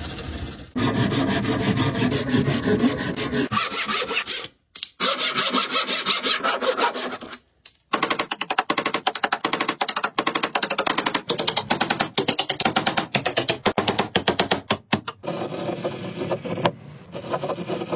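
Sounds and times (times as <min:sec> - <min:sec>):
tool scraping wood: 0:00.0 - 0:07.4, 0:15.1 - 0:17.9.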